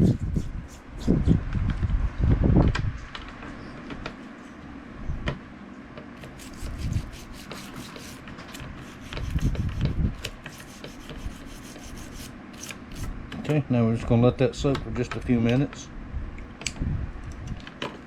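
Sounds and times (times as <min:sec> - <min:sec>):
scratchy scraping on knife: 0:06.2 - 0:13.1.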